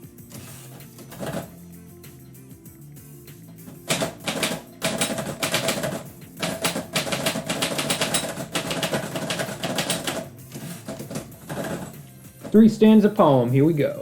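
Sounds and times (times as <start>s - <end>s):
typewriter keys clacking: 0.4s - 1.5s, 3.7s - 12.6s.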